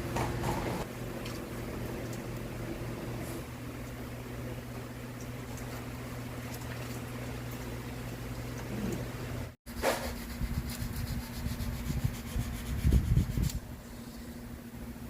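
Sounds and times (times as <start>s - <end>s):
steady low hum: 0.0s - 15.0s
rubbing and scraping handling noises: 9.7s - 13.6s.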